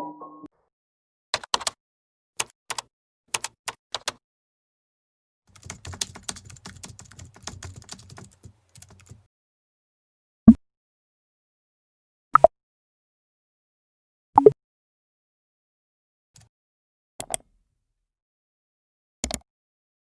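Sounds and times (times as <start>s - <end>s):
short piano-like chime: 0.0s - 0.5s
keyboard keys clicking: 1.4s - 1.8s, 2.4s - 4.2s, 5.5s - 9.2s, 19.2s - 19.4s.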